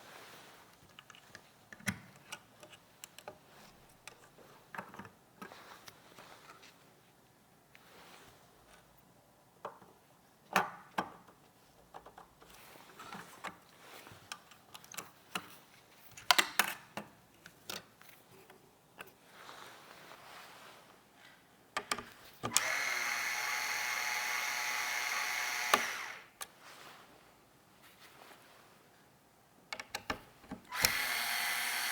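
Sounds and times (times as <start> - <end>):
electric screwdriver whirring: 22.5 - 26.4, 30.7 - 31.9.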